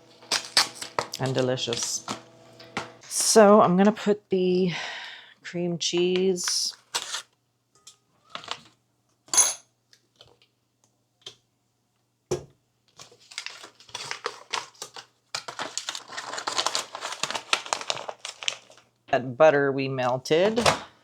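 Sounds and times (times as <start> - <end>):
packaging crinkling and rustling: 0.0 - 3.3, 6.5 - 7.4, 8.2 - 8.8, 12.9 - 19.0.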